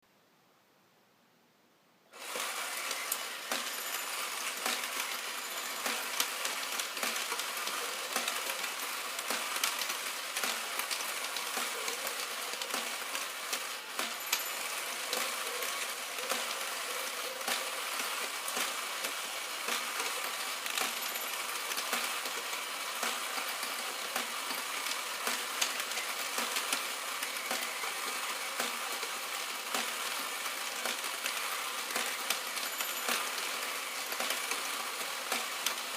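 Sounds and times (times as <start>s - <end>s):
toy clattering clicks and clinks: 2.2s - 35.9s
toy motor whirring hiss: 2.2s - 35.9s.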